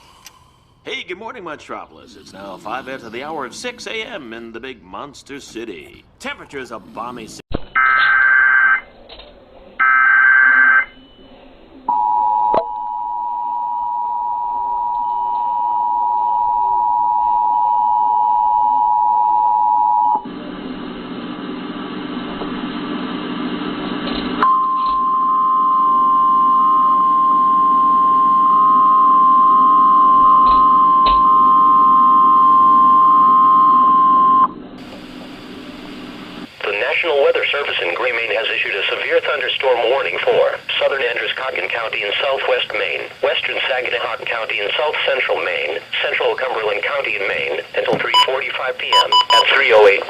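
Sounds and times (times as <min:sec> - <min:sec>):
two-tone attention signal: 0:48.1 - 0:49.6.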